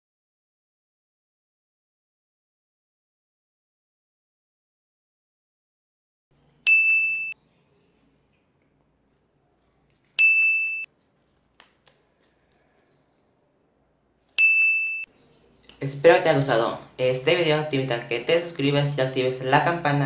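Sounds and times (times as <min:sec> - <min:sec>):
high electronic chime: 0:06.7 - 0:07.4.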